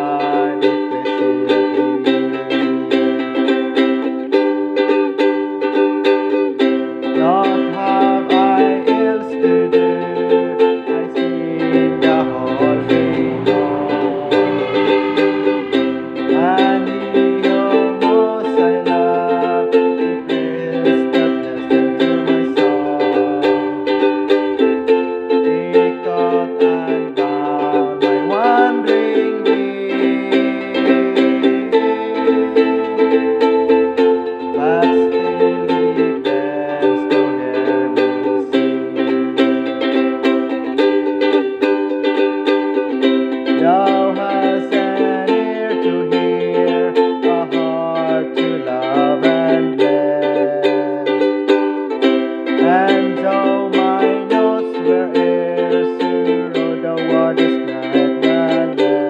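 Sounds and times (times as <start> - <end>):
ukulele strumming: 0.0 - 59.0.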